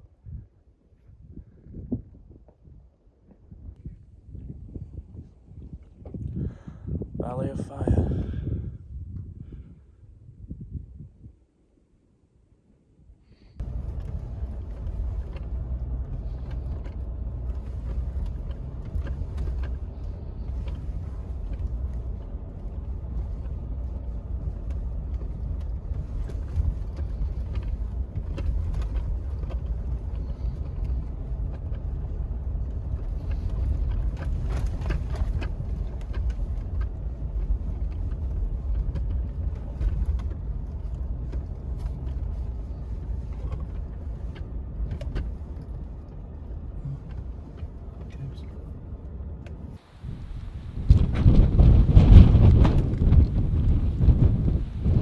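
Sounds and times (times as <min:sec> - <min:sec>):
truck engine and road rumble: 0:00.0 - 0:55.0
light rattles: 0:13.6 - 0:49.7.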